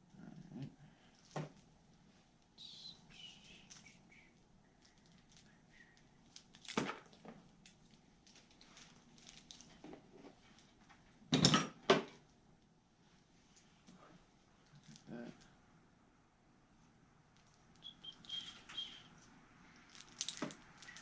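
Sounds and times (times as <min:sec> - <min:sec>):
faint clicks and rustles: 0:00.0 - 0:11.2, 0:16.7 - 0:21.0.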